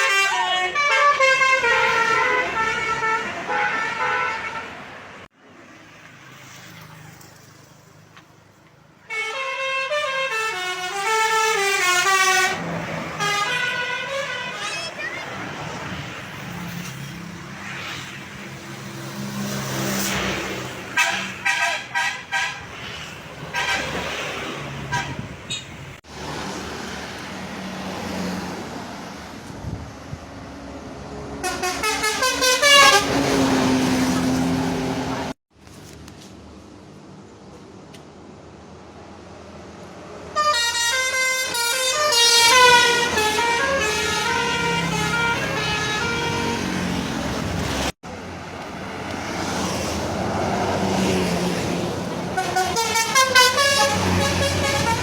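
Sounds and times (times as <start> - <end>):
musical bus horn melody: 0.0 - 4.8, 9.1 - 15.0, 24.9 - 25.3, 31.4 - 33.7, 40.4 - 47.2, 52.3 - 55.0
engine and road noise: 0.0 - 55.0.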